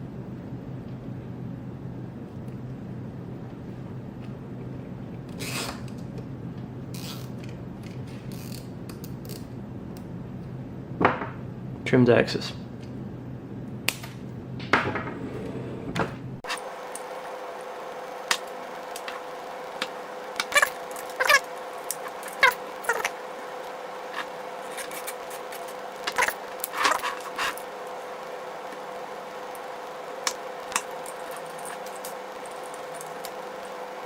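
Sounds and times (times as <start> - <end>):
faint hum: 0.0 - 34.0.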